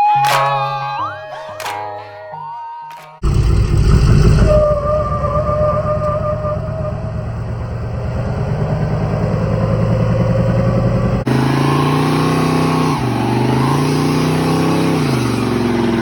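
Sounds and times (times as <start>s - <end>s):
engine pulling under load: 3.2s - 16.0s
engine running with low pulse: 3.2s - 16.0s.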